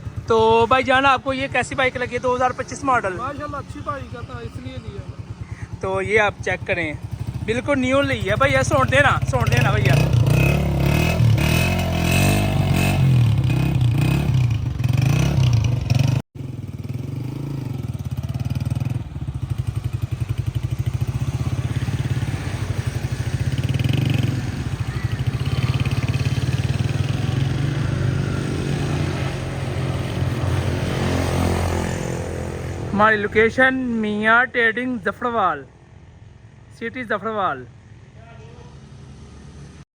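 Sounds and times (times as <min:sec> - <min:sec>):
motorcycle engine idling: 0:00.0 - 0:11.6, 0:12.4 - 0:28.3.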